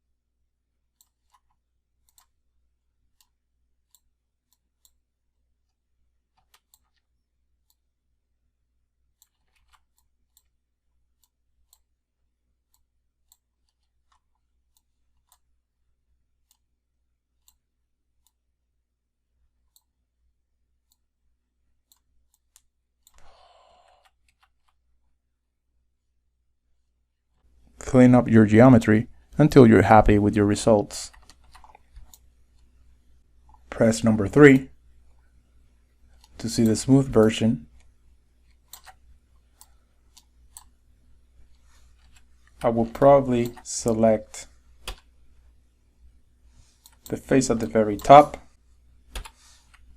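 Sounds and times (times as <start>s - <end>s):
computer mouse clicks: 1.0s - 2.4s, 3.2s - 5.0s, 6.4s - 7.0s, 9.2s - 10.6s, 17.4s - 17.6s, 19.7s - 19.9s, 21.8s - 24.8s, 31.1s - 32.7s, 36.0s - 40.8s, 43.4s - 45.1s, 46.7s - 48.4s, 49.1s - 49.9s.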